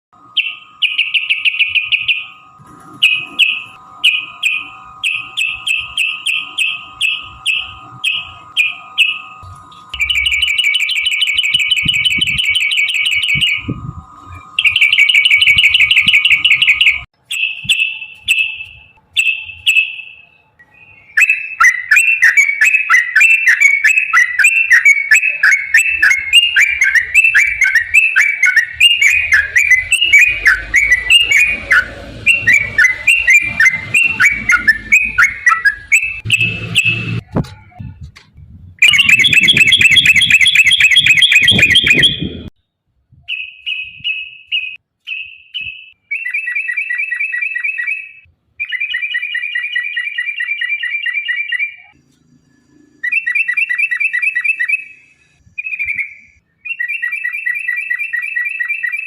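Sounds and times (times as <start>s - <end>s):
bulbul singing: 0.2s - 37.8s, 38.8s - 42.5s, 43.1s - 52.2s.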